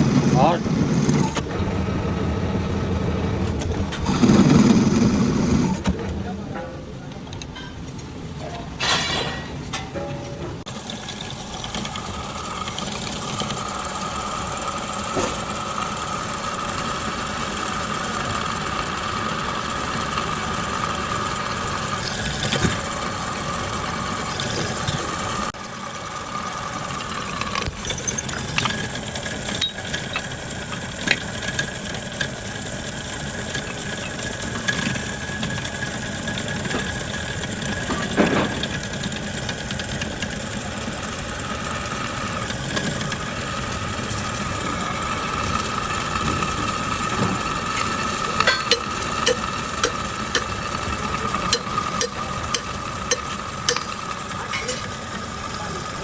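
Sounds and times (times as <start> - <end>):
lathe whining: 0.0 - 6.5, 10.6 - 56.0.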